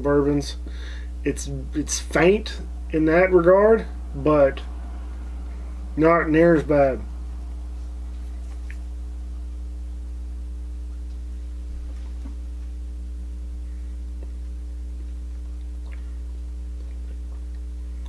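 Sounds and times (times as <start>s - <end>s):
steady higher tones: 0.0s - 11.8s
low electrical hum: 0.0s - 18.0s.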